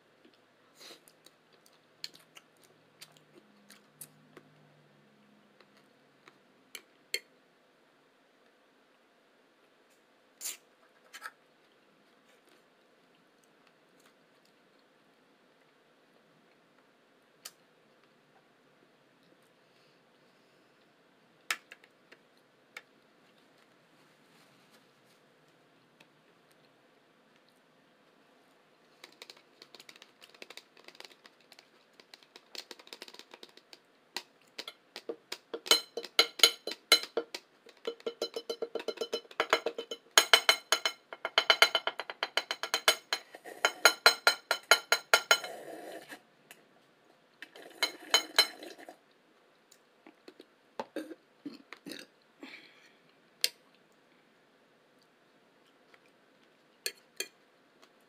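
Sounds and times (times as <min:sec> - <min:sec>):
wet chewing and lip smacks: 0:01.1 - 0:04.2.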